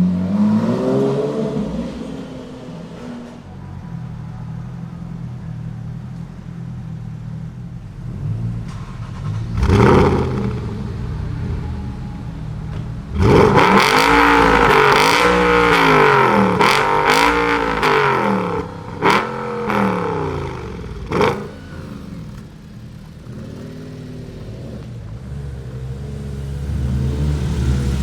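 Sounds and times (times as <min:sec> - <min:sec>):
car engine revving: 0:00.0 - 0:28.0
exhaust pops: 0:12.4 - 0:25.3.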